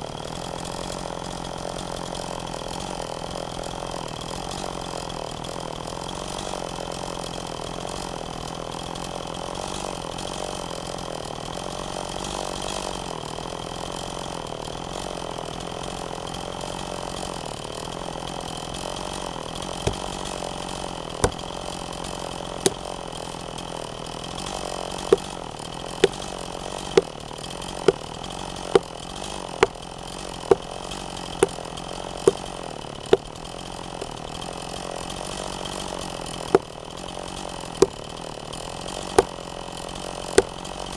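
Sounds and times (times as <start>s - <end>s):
engine running: 13.8s - 40.9s
sharp knocks: 19.9s - 20.2s, 21.2s - 21.4s.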